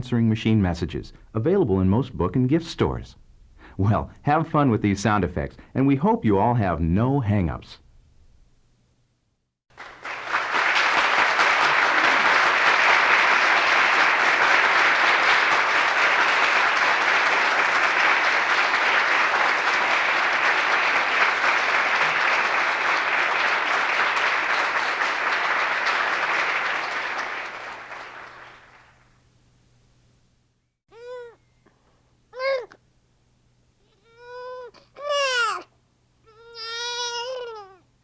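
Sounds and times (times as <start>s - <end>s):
crowd applause: 9.7s - 29.0s.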